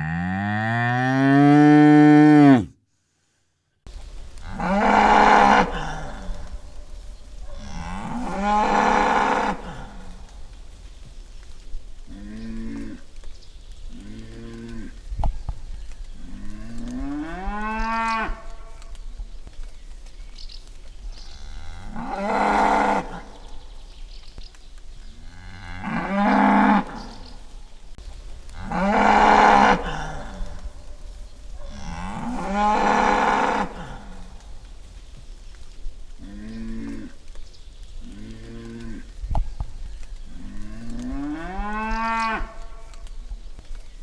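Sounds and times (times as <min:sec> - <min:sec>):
bull bellowing: 0:04.0 - 0:10.5, 0:28.5 - 0:34.4.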